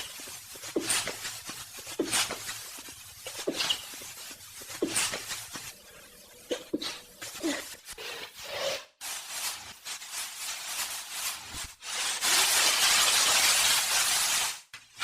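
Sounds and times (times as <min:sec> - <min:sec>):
person sniffling: 0:06.5 - 0:08.3.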